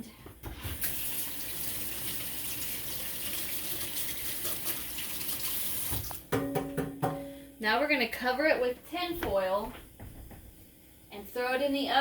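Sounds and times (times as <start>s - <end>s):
tap water running over hands: 0.6s - 6.2s.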